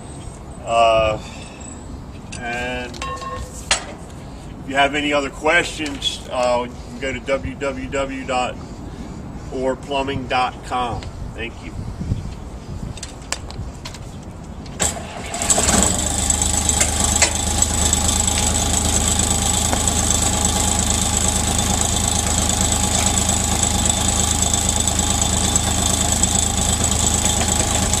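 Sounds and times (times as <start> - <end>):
engine running with high whine: 14.7 - 28.0.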